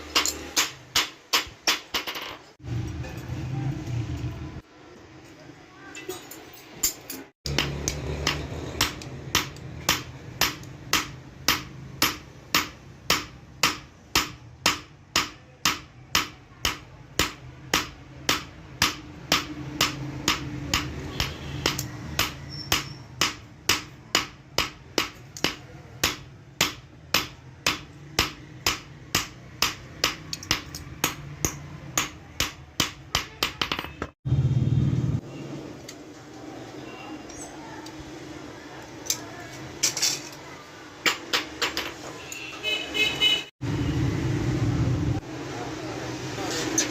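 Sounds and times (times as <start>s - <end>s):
hammer striking metal: 0.0s - 3.4s, 6.8s - 34.2s.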